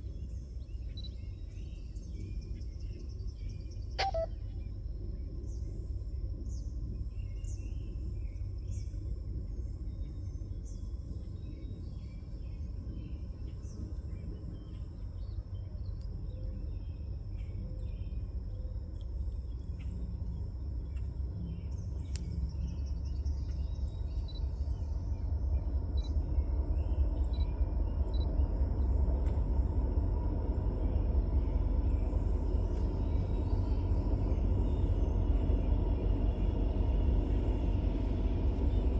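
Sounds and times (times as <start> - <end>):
birds chirping: 3.7 - 4.6
train locomotive rumble: 16.5 - 38.9
insects droning: 19.4 - 38.9.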